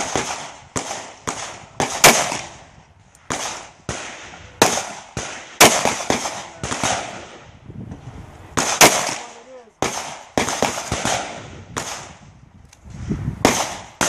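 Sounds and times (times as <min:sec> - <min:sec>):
pistol shots with ringing echo: 0:00.0 - 0:02.6, 0:03.3 - 0:07.4, 0:08.6 - 0:12.2, 0:13.4 - 0:14.0.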